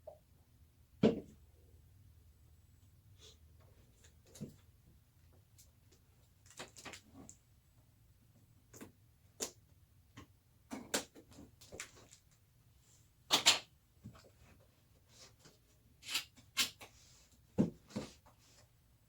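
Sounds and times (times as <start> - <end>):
packaging clicks taps and rustles: 5.6 - 7.4.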